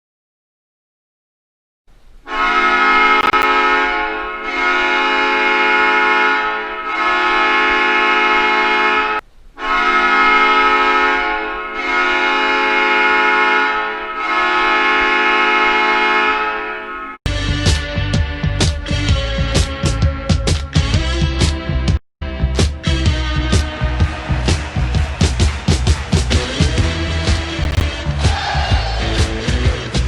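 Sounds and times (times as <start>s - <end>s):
hockey goal horn blasts: 2.3s - 17.2s.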